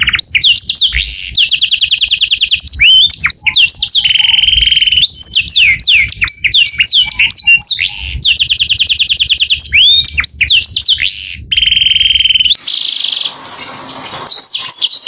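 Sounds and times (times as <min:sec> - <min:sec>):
canary singing: 0:00.0 - 0:15.0.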